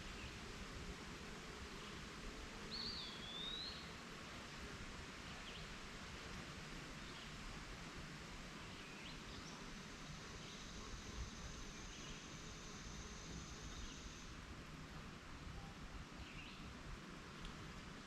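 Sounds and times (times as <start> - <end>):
steady hiss: 0.0 - 18.0
faint bird chirps: 2.7 - 3.9.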